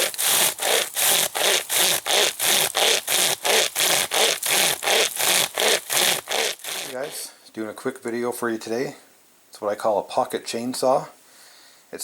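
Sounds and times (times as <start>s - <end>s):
pocket chainsaw cutting wood: 0.0s - 7.3s.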